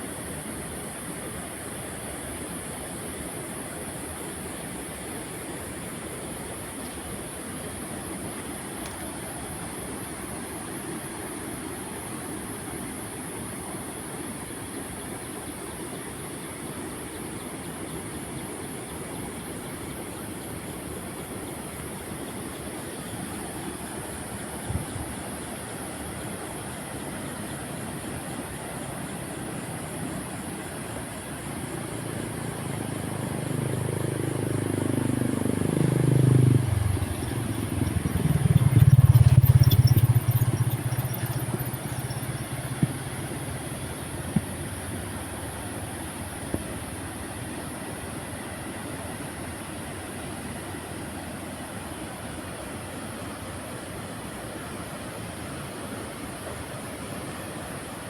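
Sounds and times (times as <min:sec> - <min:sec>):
heavy vehicle engine passing: 0:33.0 - 0:44.9.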